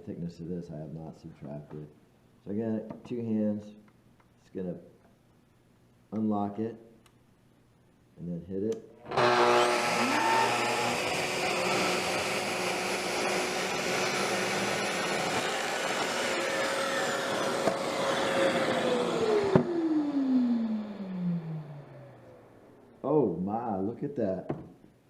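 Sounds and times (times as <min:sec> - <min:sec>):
track saw cutting wood: 0:09.1 - 0:22.4
dust extractor drawing air: 0:09.1 - 0:22.5
saw motor winding down: 0:09.1 - 0:22.8.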